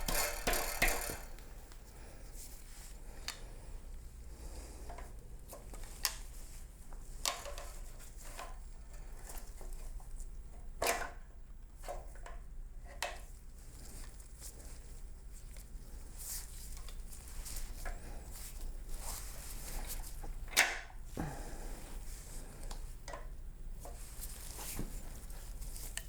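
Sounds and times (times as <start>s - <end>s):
small metal parts clicking: 0.0s - 1.4s
steady low hum: 12.4s - 26.0s.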